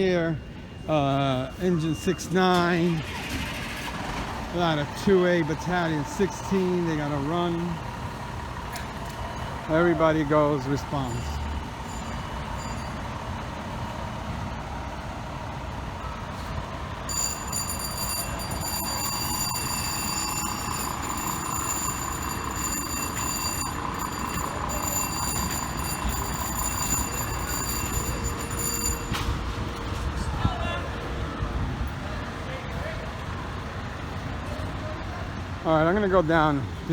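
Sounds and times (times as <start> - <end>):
fire engine rumbling: 0.0 - 36.9
high-pitched electronic warning tone: 17.1 - 29.4.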